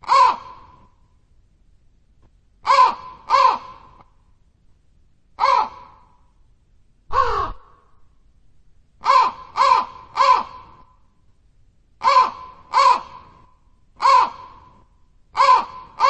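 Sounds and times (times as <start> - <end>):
crow cawing: 0.0 - 0.8, 2.6 - 4.0, 5.4 - 6.2, 7.1 - 7.9, 9.0 - 10.9, 12.0 - 13.4, 14.0 - 14.7, 15.4 - 16.0.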